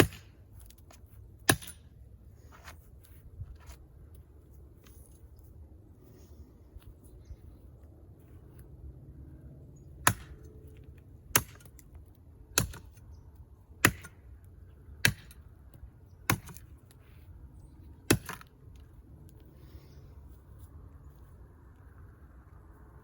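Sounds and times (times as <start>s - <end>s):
brush knife chopping tree trunk: 0.0s - 2.0s, 10.0s - 10.5s, 11.2s - 11.9s, 12.5s - 13.0s, 13.7s - 14.3s, 14.9s - 17.0s, 17.9s - 18.8s.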